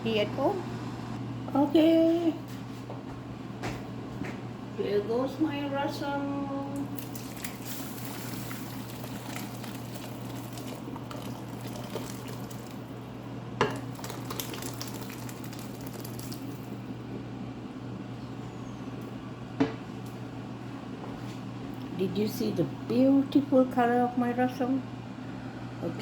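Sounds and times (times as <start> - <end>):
liquid splashing: 6.8 - 13.0, 13.8 - 16.8.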